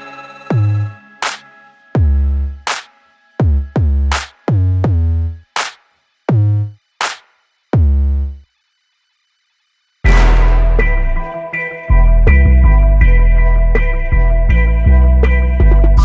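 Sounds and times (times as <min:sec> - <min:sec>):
snare or clap hits: 0:02.7 - 0:02.9, 0:04.1 - 0:04.4, 0:05.6 - 0:06.0, 0:07.0 - 0:07.4, 0:10.1 - 0:11.4
drum machine kicks: 0:03.4 - 0:08.1, 0:10.1 - 0:11.3.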